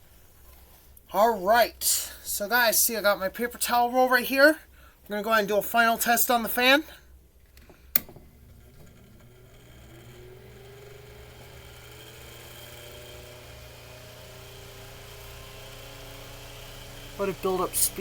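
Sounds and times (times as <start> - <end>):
electric fan whirring: 6.2 - 18.0
switch click: 7.5 - 9.2.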